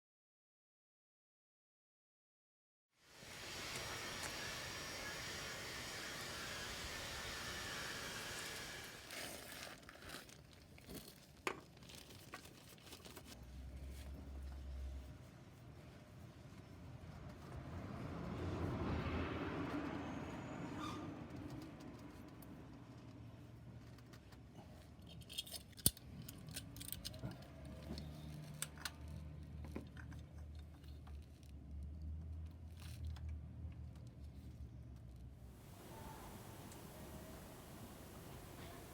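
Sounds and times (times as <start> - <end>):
steady hiss: 3.1 - 9.2, 35.6 - 38.9
crinkling and rustling: 9.0 - 17.6
faint low hum: 35.6 - 38.9.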